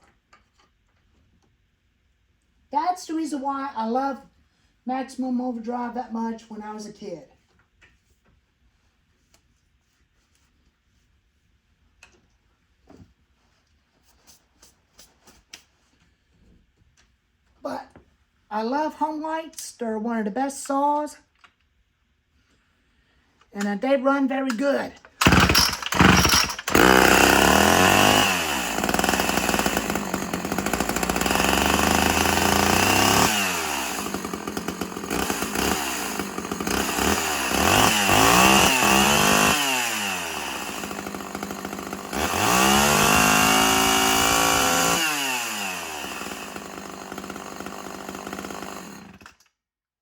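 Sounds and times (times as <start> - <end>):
chainsaw engine revving and idling: 25.2 - 49.4.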